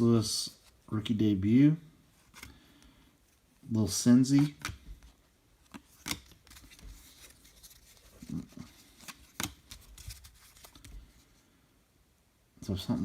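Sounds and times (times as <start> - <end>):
cards sliding: 4.2 - 11.2
cards clicking: 4.4 - 4.9, 5.6 - 7.8, 8.8 - 10.9.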